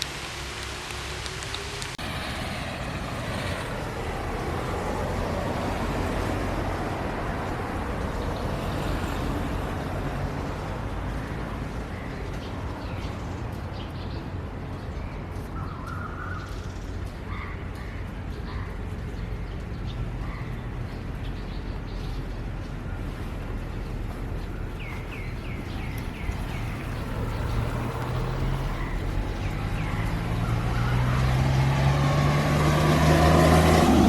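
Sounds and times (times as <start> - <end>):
steady rain: 0.0 - 14.7, 22.0 - 34.0.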